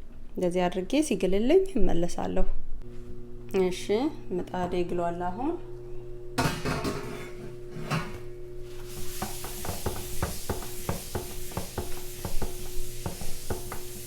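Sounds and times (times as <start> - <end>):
batter sizzling on hot griddle: 8.6 - 14.0.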